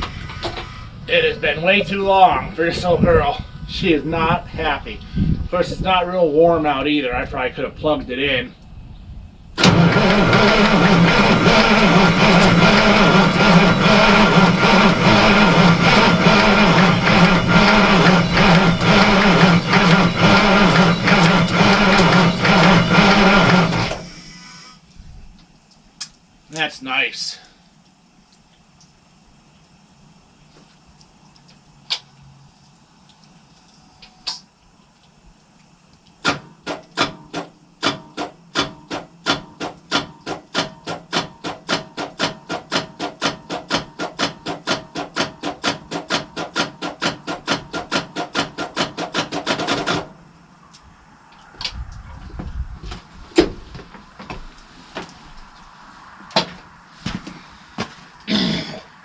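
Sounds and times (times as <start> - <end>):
diesel engine starter cranking: 0.0 - 5.9, 9.6 - 25.0, 35.8 - 50.4
low rumble and knocks: 51.6 - 54.5.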